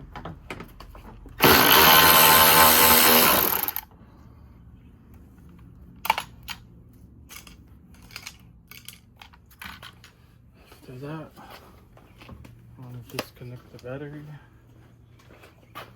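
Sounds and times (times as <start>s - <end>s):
power drill running: 1.4s - 3.8s.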